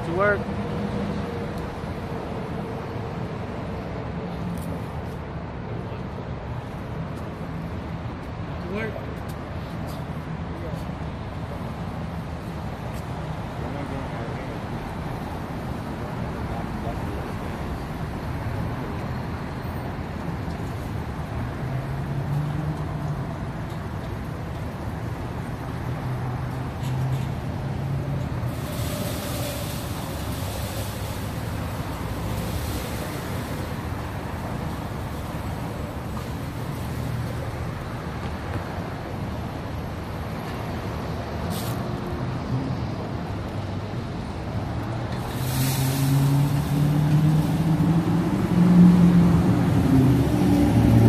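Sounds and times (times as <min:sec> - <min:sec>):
road noise: 0:00.0 - 0:51.0
vehicle engine hum: 0:00.0 - 0:51.0
short hiss: 0:41.5 - 0:41.8, 0:45.2 - 0:46.4.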